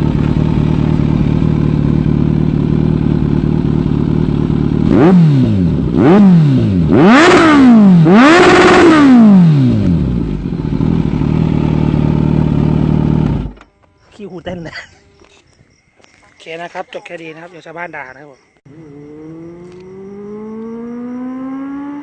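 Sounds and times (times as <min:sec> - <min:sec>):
motorcycle engine idling and revving: 0:00.0 - 0:14.0, 0:18.6 - 0:22.0.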